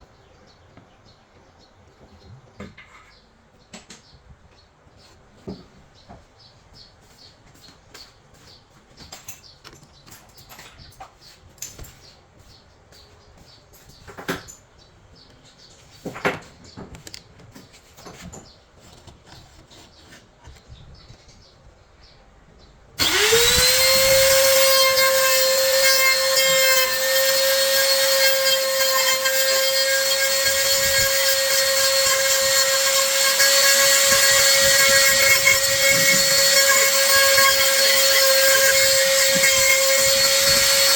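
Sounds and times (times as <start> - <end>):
electric wood router whining: 23.0 - 40.9.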